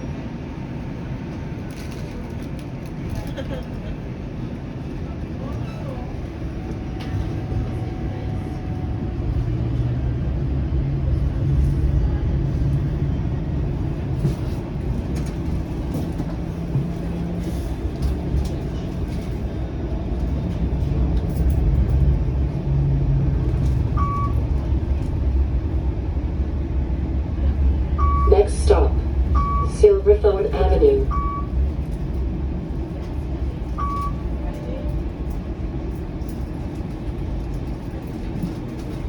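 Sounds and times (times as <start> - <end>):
streetcar rumble and motor hum: 0.0 - 39.0
short beep: 24.0 - 24.4, 28.0 - 29.8, 30.6 - 31.5.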